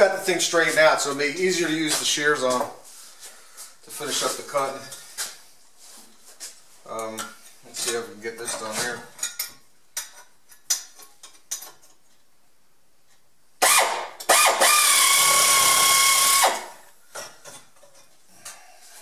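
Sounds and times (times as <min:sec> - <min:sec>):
power tool whining: 0:13.6 - 0:16.7.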